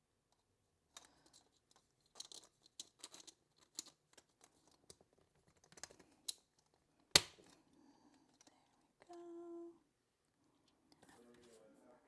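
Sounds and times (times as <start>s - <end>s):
plastic pieces clicking and tapping: 0.3s - 7.6s.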